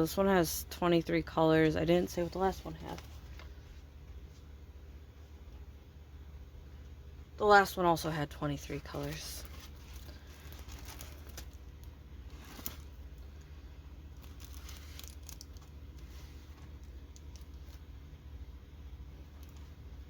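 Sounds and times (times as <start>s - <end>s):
packaging rustling and crinkling: 8.6s - 18.0s, 19.2s - 20.0s.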